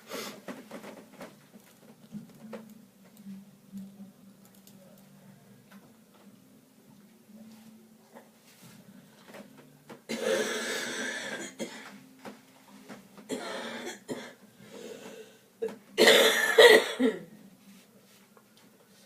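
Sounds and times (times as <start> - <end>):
man coughing: 16.0 - 17.3.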